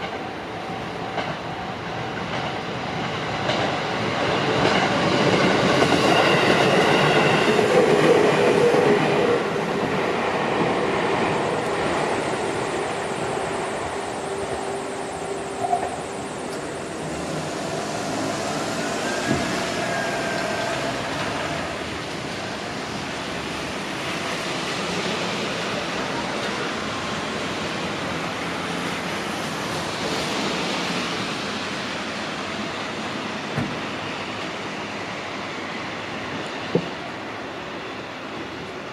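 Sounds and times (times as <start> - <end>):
train wheels rumbling on rail: 0.0 - 38.9.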